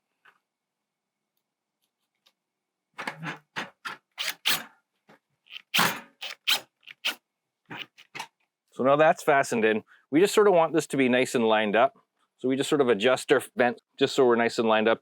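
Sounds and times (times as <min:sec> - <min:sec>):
screws and hardware scraping and clicking: 0:03.0 - 0:04.7, 0:05.5 - 0:08.3.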